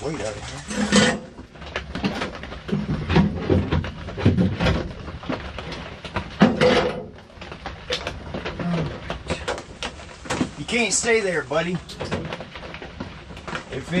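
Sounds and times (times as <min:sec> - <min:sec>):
metal scraping: 0:00.0 - 0:01.4
metal knocks and clanks: 0:00.6 - 0:09.6.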